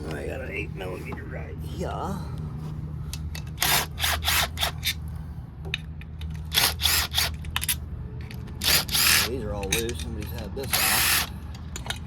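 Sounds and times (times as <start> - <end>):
steady low hum: 0.0 - 12.0
hand tools clicking and scraping: 3.1 - 5.0, 5.7 - 12.0.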